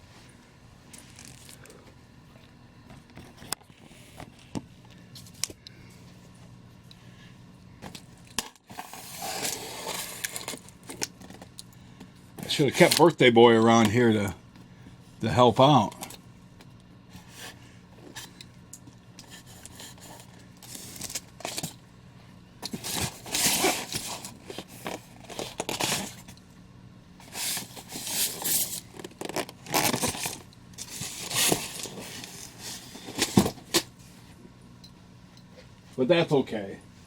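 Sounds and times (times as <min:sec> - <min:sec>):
packaging scraping and tearing: 0:08.6 - 0:11.5, 0:22.7 - 0:26.3, 0:27.2 - 0:33.9.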